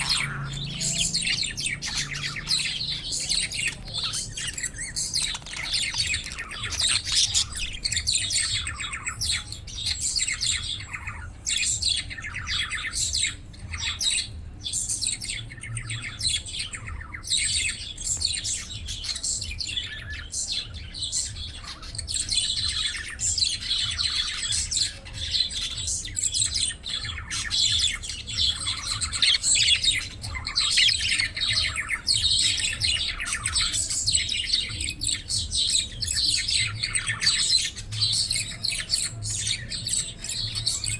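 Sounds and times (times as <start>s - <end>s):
budgies chirping and chattering: 0.0s - 40.9s.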